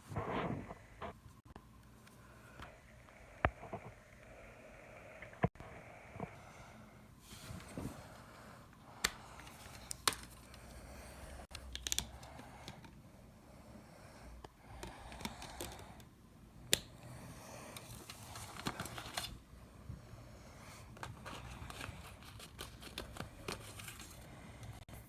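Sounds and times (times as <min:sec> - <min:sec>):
small clicks of cd case: 0:09.0 - 0:10.6, 0:11.5 - 0:12.9
packaging rustling: 0:17.8 - 0:19.4, 0:21.0 - 0:24.3.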